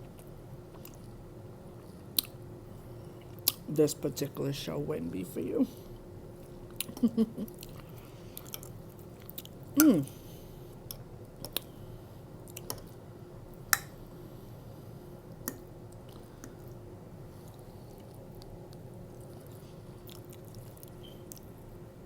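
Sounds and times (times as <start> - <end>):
chewing food: 0.0 - 1.2, 6.4 - 9.8, 12.4 - 13.0, 17.4 - 21.7.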